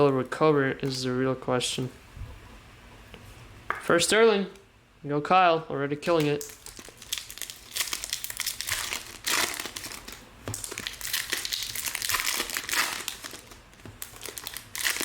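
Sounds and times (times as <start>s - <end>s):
foil wrappers crinkling: 6.1s - 15.0s.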